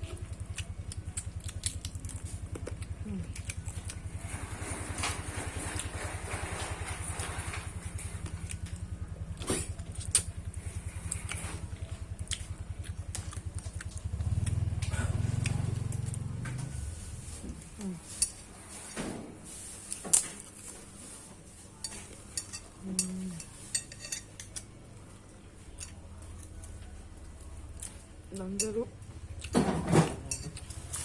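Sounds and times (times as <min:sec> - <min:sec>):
vehicle engine throbbing: 0:09.8 - 0:17.9
cutlery clinking on a plate: 0:21.8 - 0:24.5.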